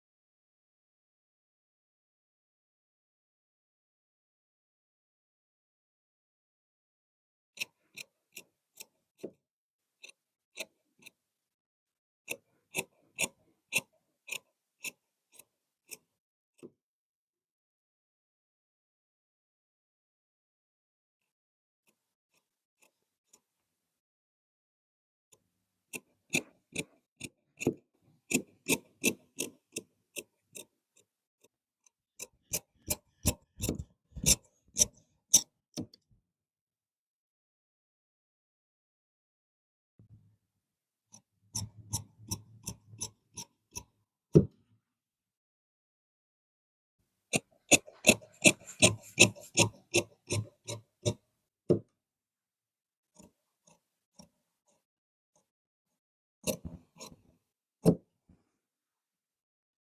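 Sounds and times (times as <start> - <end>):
shears snipping cloth: 47.4 - 50.8.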